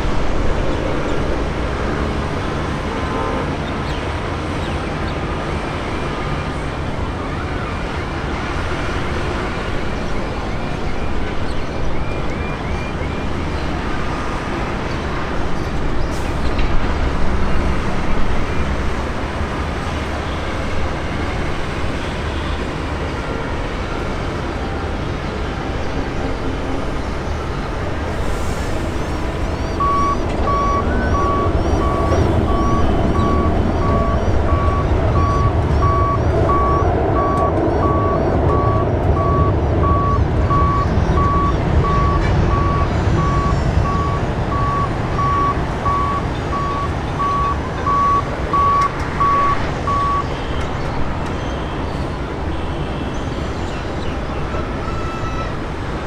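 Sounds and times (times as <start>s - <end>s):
loud low rumble: 26.6s - 48.6s
vehicle reversing alarm beeping: 27.6s - 50.7s.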